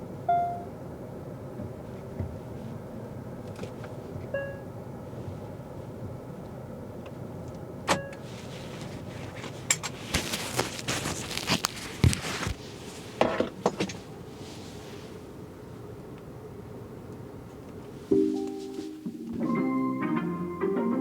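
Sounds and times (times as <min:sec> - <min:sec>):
low steady hum: 0:00.0 - 0:21.0
clicks in car cabin: 0:06.4 - 0:08.3
rustling: 0:08.2 - 0:15.2.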